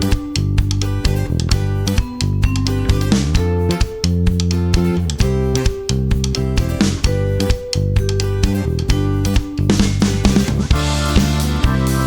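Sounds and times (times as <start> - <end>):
guitar-led instrumental music: 0.0 - 12.0.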